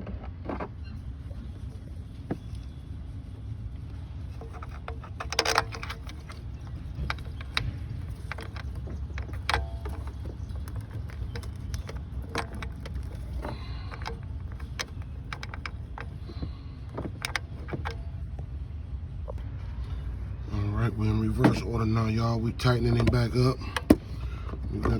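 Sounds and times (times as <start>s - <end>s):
steady low rumble: 0.0s - 24.9s
hand tools clicking and clinking: 4.3s - 18.3s.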